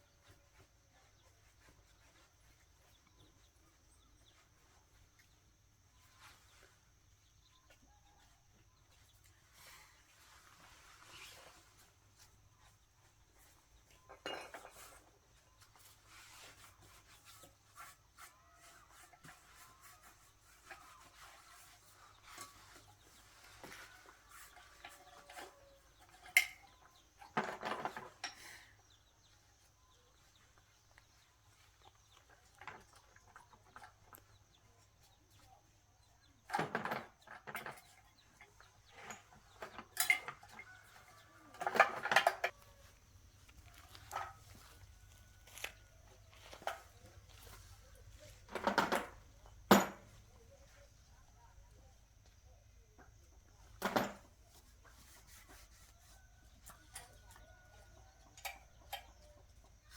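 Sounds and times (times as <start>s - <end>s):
metal tools clinking: 39.0s - 40.7s.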